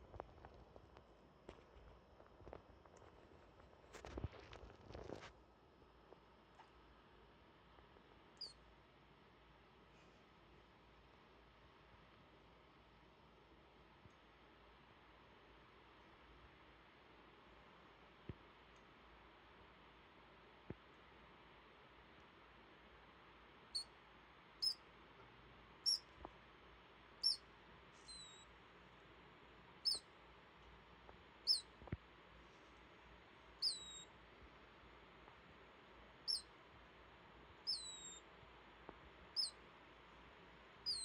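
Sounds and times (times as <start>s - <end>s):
degu snoring squeaks: 33.6s - 34.1s, 37.7s - 38.2s.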